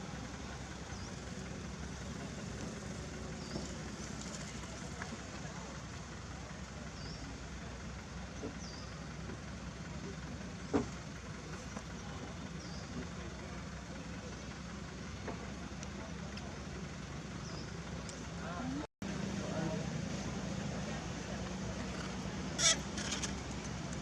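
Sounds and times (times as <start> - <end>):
continuous low hum: 0.0 - 24.0.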